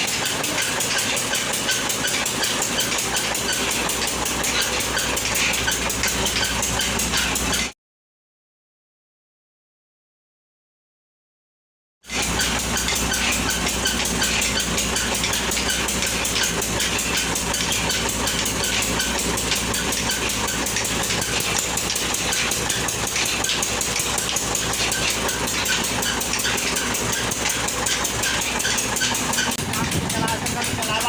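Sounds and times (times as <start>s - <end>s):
flour mill grinding: 12.1s - 31.0s.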